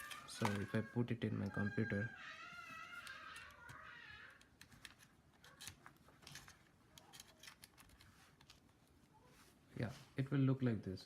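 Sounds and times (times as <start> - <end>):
small plastic clicks and scrapes: 2.9 - 8.7.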